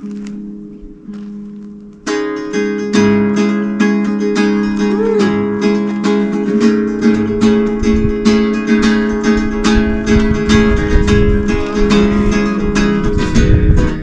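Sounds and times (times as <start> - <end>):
acoustic guitar strumming: 0.0 - 14.0
person singing: 4.8 - 5.6.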